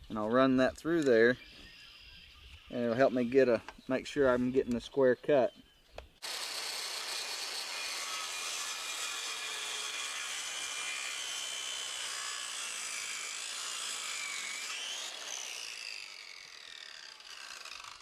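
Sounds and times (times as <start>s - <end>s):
circular saw cutting wood: 6.2s - 18.0s.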